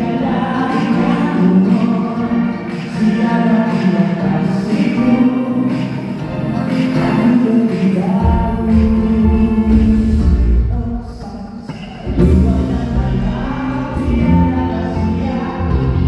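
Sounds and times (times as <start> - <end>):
live band playing: 0.0 - 16.0
person singing: 0.0 - 16.0
deep bass: 8.2 - 11.1, 12.1 - 16.0.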